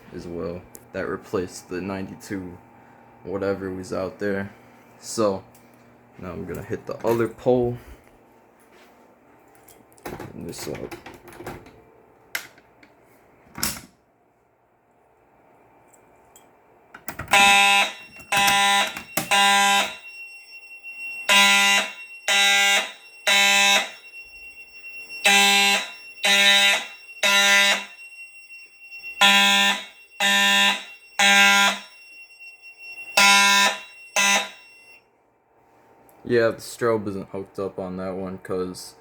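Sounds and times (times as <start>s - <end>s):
fire alarm horn blasts: 17.2s - 35.1s.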